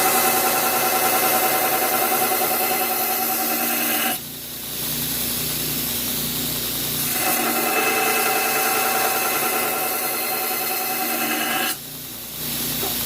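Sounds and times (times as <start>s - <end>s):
grinder running lightly: 0.0s - 4.2s, 7.1s - 11.8s
power grinder grinding steel: 0.0s - 4.2s, 7.1s - 11.8s.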